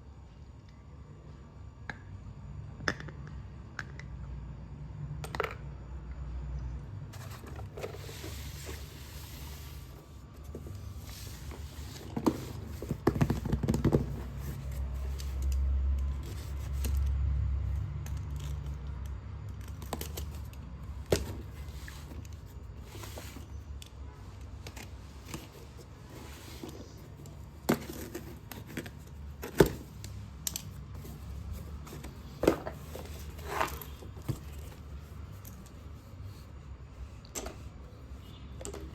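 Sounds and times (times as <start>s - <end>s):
low rumble of handling: 7.1s - 38.1s.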